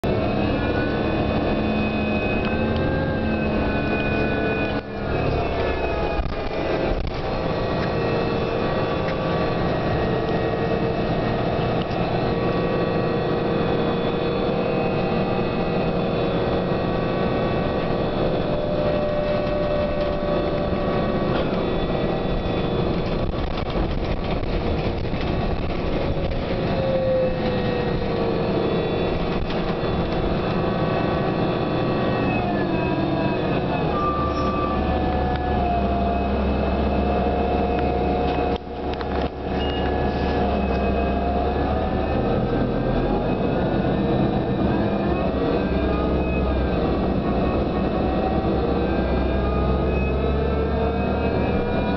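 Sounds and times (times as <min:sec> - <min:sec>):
bus drivetrain whining: 0:00.0 - 0:51.9
low hum: 0:00.0 - 0:51.9.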